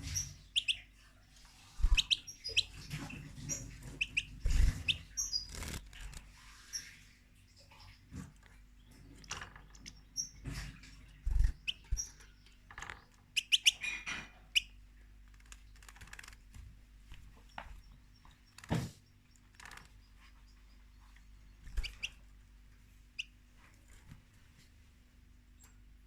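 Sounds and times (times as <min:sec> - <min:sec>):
finch chirping: 0:00.0 - 0:07.0, 0:08.8 - 0:12.6, 0:13.4 - 0:14.8, 0:17.3 - 0:22.4, 0:23.1 - 0:23.4
small clicks and rustles: 0:01.4 - 0:14.0, 0:15.1 - 0:22.2.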